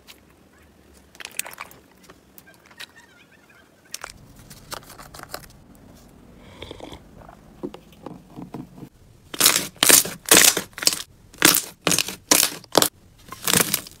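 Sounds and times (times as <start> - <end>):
slime crackling and crunching: 9.3 - 14.0.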